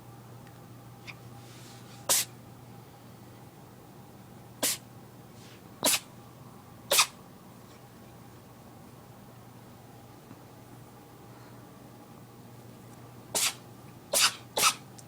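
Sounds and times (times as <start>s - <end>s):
cat sneezing: 2.0s - 2.4s, 4.6s - 4.9s, 5.8s - 6.1s, 6.9s - 7.2s, 13.3s - 14.9s.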